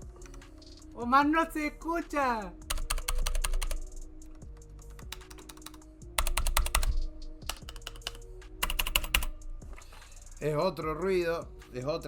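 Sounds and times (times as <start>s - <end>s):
mechanical keyboard typing: 2.7s - 9.4s.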